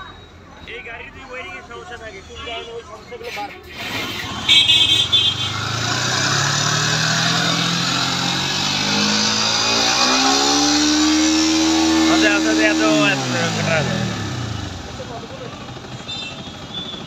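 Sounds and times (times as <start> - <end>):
motorcycle engine revving: 3.7 - 17.0.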